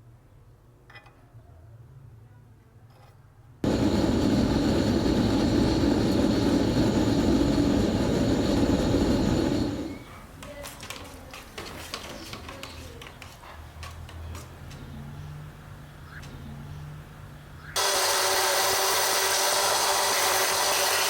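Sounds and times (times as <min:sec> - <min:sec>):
power tool running: 0:03.6 - 0:10.0, 0:17.8 - 0:21.0.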